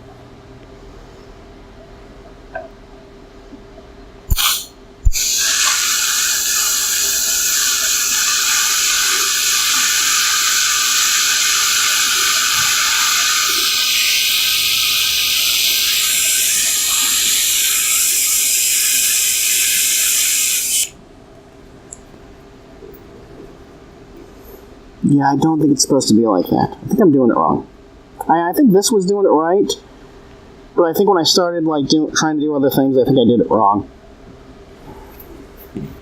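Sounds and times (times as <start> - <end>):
welding arc hissing: 4.3 - 21.0.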